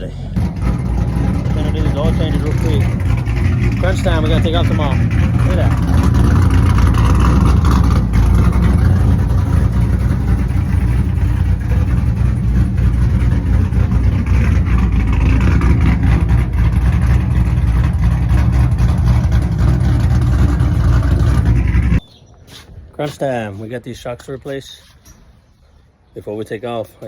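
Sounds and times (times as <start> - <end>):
car engine rumbling: 0.0 - 22.1.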